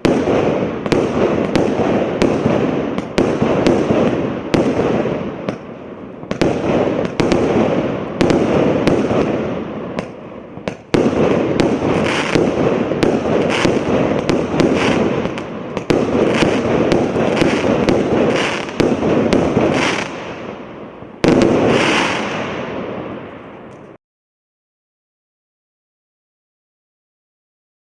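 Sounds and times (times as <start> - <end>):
fireworks firing and crackling: 0.0 - 24.0.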